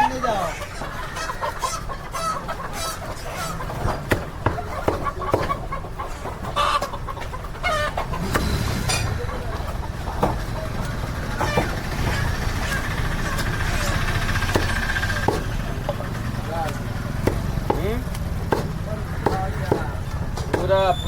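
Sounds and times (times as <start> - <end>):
chickens clucking: 0.0 - 21.0
sharp knocks: 3.7 - 5.7, 10.1 - 20.9.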